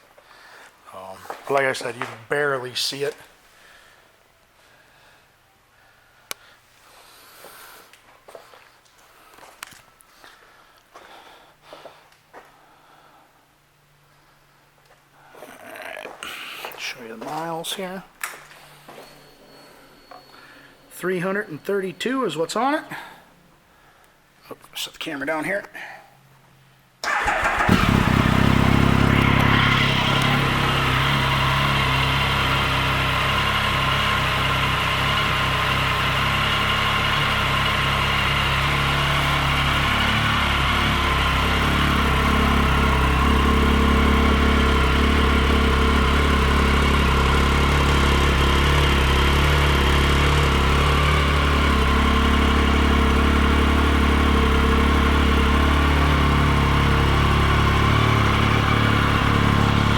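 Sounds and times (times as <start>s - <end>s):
motorcycle engine starting and idling: 27.0s - 59.9s.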